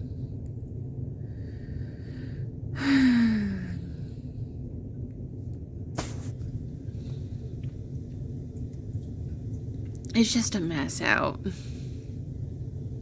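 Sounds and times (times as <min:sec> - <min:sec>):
low room hum: 0:00.0 - 0:13.0
person sighing: 0:02.8 - 0:03.9.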